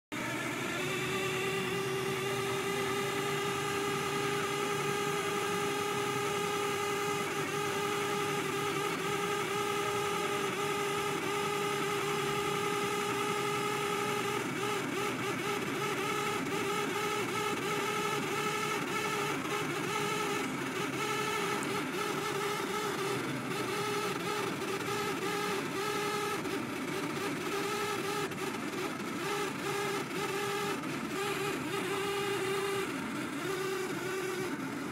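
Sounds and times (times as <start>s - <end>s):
vehicle running: 0.1s - 34.9s
vehicle whine: 0.1s - 34.9s.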